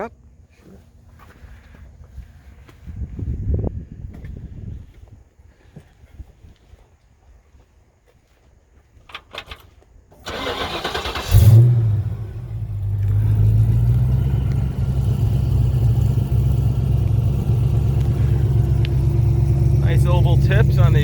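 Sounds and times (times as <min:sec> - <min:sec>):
car starter cranking: 0:09.1 - 0:21.0
engine revving and idling: 0:10.3 - 0:21.0.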